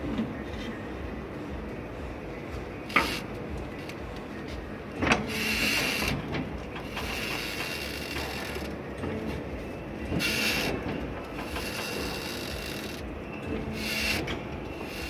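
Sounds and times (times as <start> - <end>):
squeaky suspension creaking: 2.8 - 4.0, 5.0 - 9.3, 10.0 - 15.0.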